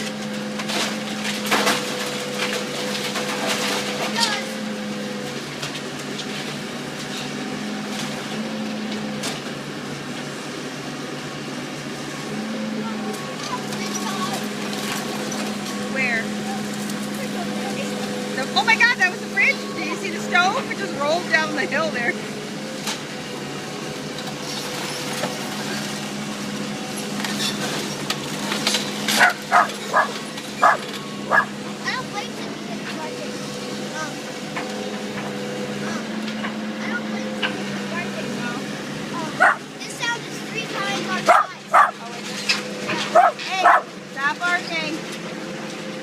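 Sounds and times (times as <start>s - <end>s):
cracks and crunches of demolition: 0.0s - 8.3s, 27.0s - 31.6s
machine hum: 0.0s - 37.0s
dog barking: 29.2s - 31.5s, 39.4s - 39.6s, 41.3s - 42.0s, 43.1s - 43.9s.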